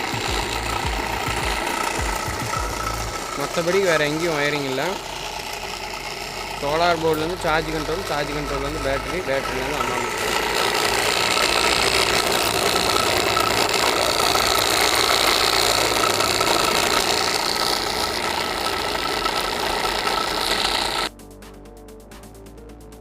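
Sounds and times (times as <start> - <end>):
grit rattling in jar: 0.0 - 21.1
mixer grinder whining: 0.0 - 21.2.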